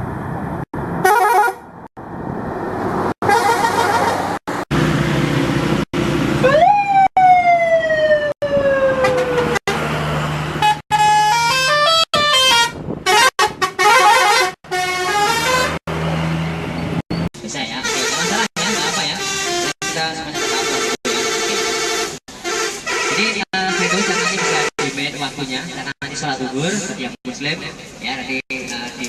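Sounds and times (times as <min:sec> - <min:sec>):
musical air horn melodies: 0:01.0 - 0:01.6, 0:10.6 - 0:15.8, 0:17.8 - 0:24.9.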